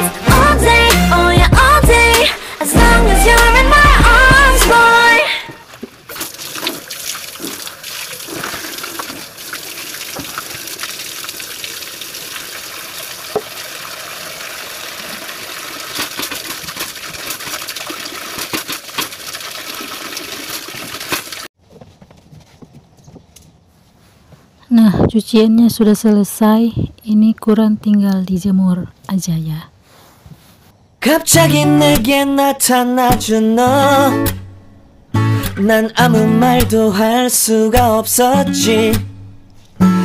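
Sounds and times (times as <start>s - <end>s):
water splashing and sloshing: 5.3s - 21.5s.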